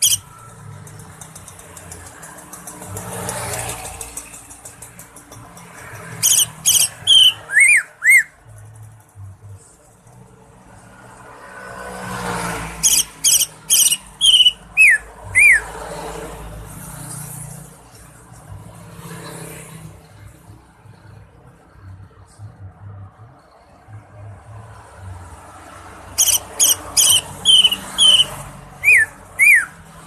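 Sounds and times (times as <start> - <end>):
bird singing ringing notes: 0.0 - 0.4, 6.2 - 8.4, 12.8 - 15.7, 26.2 - 29.8
low traffic rumble: 0.0 - 30.0.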